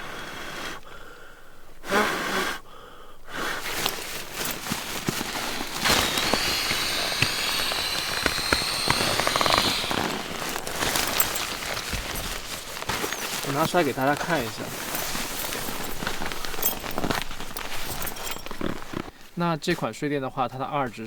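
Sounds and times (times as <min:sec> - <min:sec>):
nylon sack crinkling: 0:03.4 - 0:19.3.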